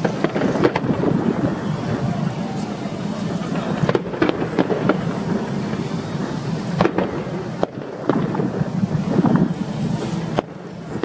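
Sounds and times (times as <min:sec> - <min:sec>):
fireworks bangs and cracks: 0:00.0 - 0:11.0
low background rumble: 0:00.0 - 0:11.0.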